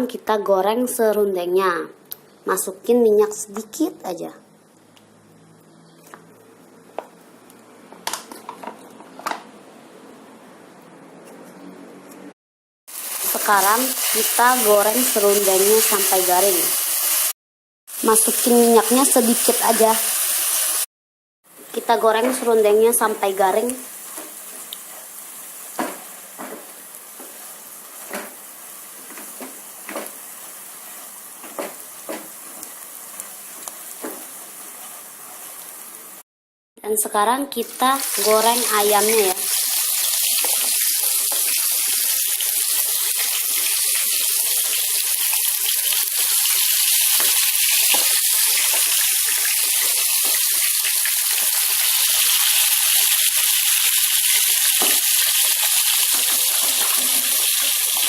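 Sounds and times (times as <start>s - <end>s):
coconut sizzling in oil: 12.9s - 20.9s, 23.0s - 36.2s, 38.0s - 58.0s.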